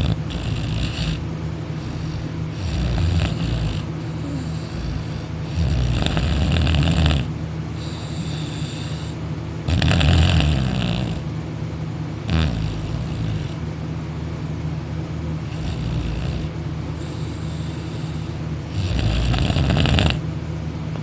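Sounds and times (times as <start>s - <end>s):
man snoring loudly: 0.0s - 1.2s, 1.8s - 11.3s, 12.3s - 13.6s, 15.5s - 20.2s.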